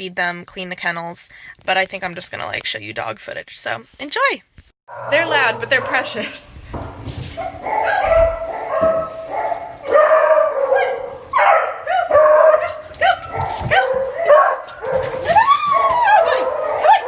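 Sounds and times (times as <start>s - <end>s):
dogs barking and baying: 4.9s - 17.0s.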